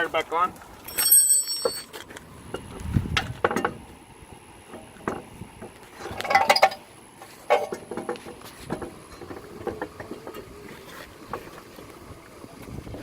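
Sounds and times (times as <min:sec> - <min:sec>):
metal tools clinking: 0:00.8 - 0:02.0.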